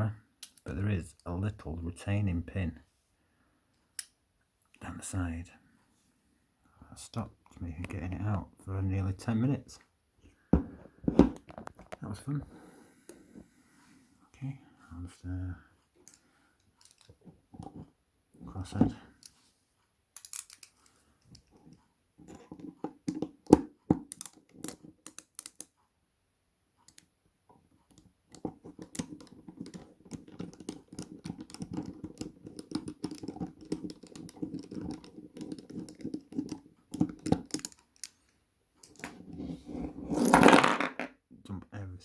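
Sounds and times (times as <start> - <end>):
metallic clicks and tapping: 20.2 - 25.8, 27.9 - 39.1.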